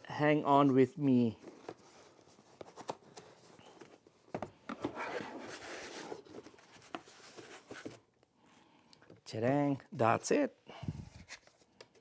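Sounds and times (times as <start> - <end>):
packaging rustling and crinkling: 1.4 - 8.0.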